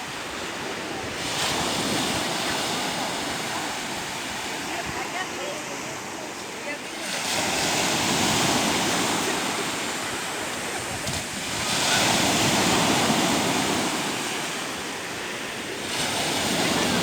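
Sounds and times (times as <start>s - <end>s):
waves rushing and washing back: 0.0s - 17.0s.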